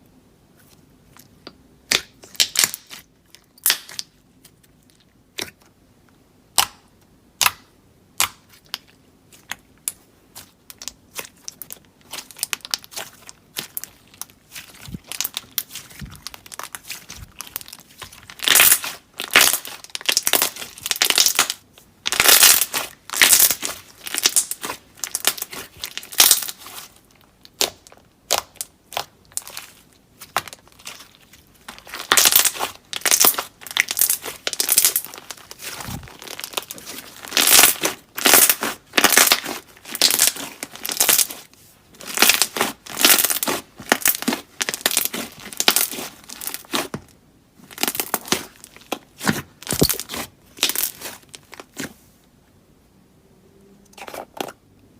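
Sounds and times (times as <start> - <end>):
slime squeezed and crackling: 1.9 - 5.6, 8.3 - 47.0, 47.6 - 52.0.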